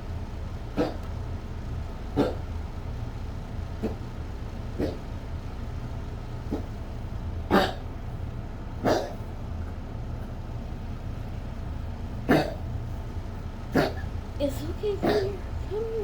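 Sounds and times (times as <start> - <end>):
dog coughing: 0.6 - 1.2, 2.1 - 2.6, 3.7 - 5.2, 6.4 - 8.0, 8.8 - 9.4, 12.1 - 13.0, 13.6 - 15.8.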